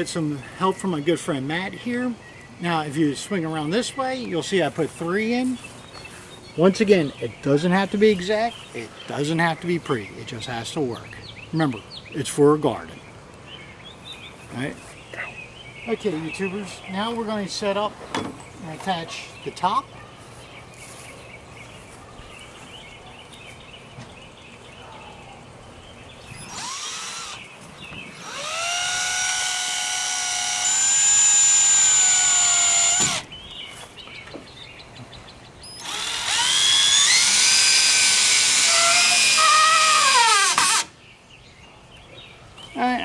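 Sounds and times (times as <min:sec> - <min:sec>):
power drill driving screws into wood: 0:26.3 - 0:27.4, 0:28.1 - 0:33.3, 0:35.7 - 0:40.9.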